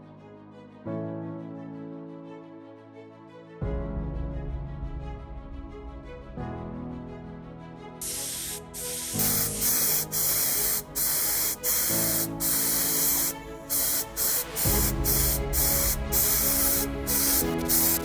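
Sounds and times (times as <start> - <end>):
background music: 0.0 - 18.0
spray adhesive hissing: 8.0 - 18.0.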